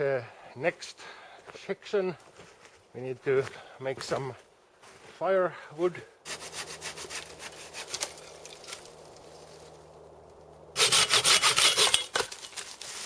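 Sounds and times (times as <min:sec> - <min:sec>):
hand saw cutting wood: 0:06.3 - 0:08.9, 0:10.8 - 0:12.4.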